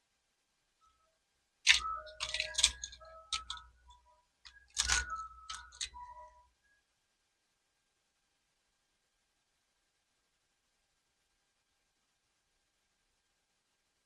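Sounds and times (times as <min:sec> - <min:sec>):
clicks and clatter: 0:01.7 - 0:06.3
short beeping tones: 0:01.7 - 0:06.5.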